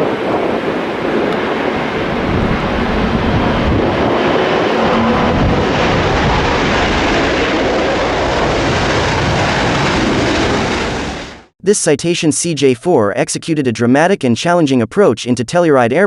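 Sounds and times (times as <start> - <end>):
jet engines rushing: 0.0 - 11.5.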